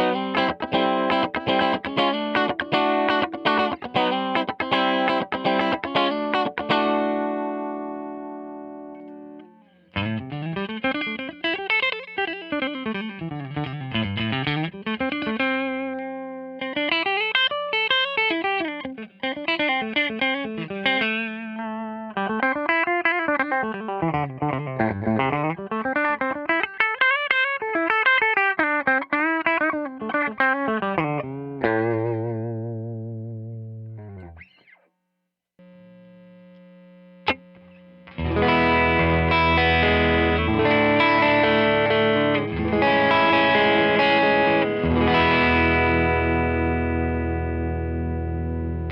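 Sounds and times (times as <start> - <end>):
electric guitar playing: 0.0 - 34.8, 35.6 - 48.9.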